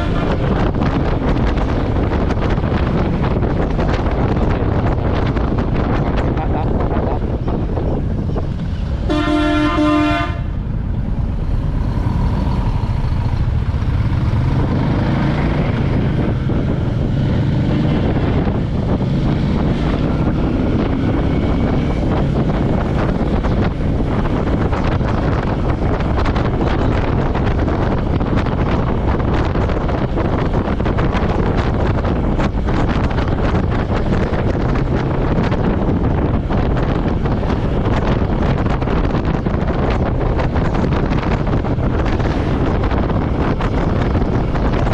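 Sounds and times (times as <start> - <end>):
vehicle horn: 0.0 - 0.5, 9.1 - 10.6
wind on microphone: 0.0 - 44.9
motorcycle engine running: 10.4 - 44.9.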